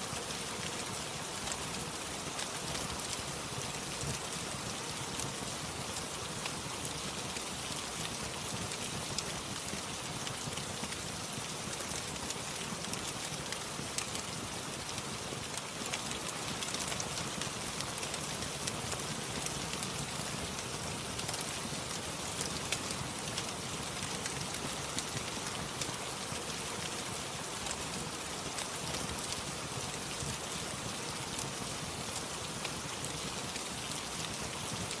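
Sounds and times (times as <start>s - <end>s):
steady rain: 0.0s - 35.0s
wood fire crackling: 10.2s - 28.7s.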